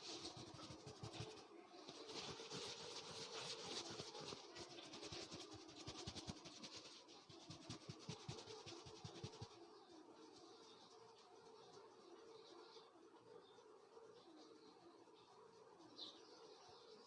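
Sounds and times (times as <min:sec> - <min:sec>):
scratchy rubbing on head: 0:00.0 - 0:09.6.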